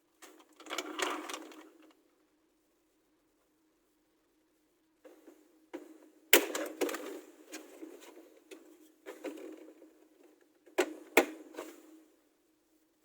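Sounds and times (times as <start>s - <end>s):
plastic scraping: 0.2s - 1.9s.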